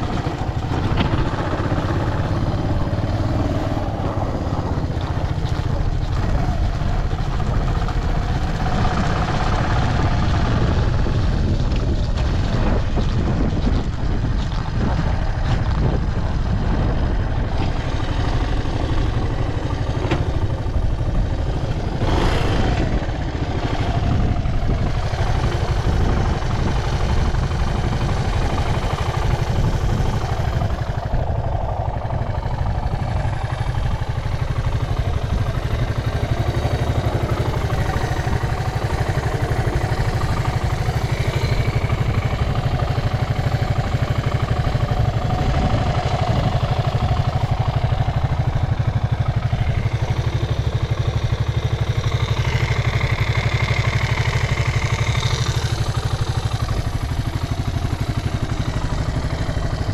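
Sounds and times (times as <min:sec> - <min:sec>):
motorcycle engine idling: 0:00.0 - 0:59.9.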